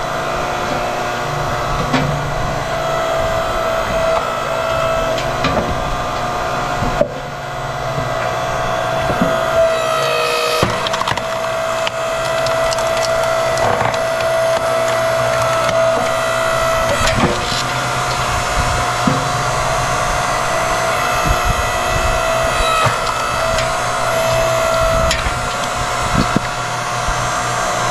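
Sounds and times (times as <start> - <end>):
log splitter motor whine: 0.0 - 27.9
logs cracking and splintering: 3.6 - 27.9.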